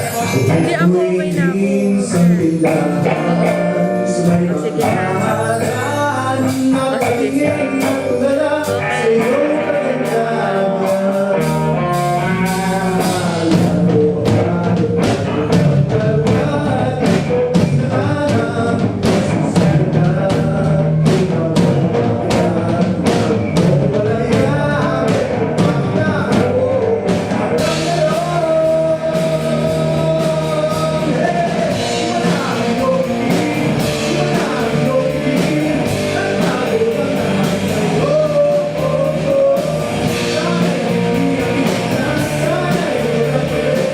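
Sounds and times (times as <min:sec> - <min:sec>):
drum kit: 0:00.0 - 0:43.9
electric guitar: 0:00.0 - 0:43.9
person singing: 0:00.0 - 0:43.9.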